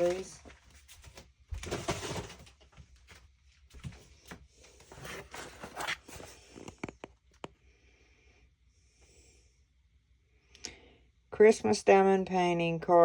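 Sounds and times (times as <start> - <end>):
packaging rustling: 0.0 - 7.0.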